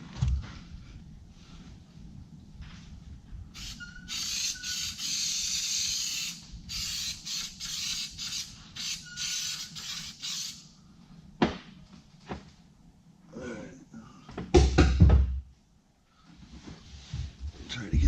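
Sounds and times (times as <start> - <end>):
aerosol spray can hissing: 3.6 - 10.6.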